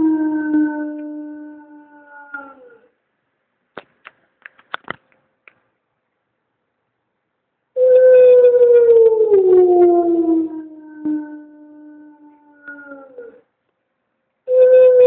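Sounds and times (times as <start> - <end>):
dog howling: 0.0 - 2.9, 7.8 - 13.4.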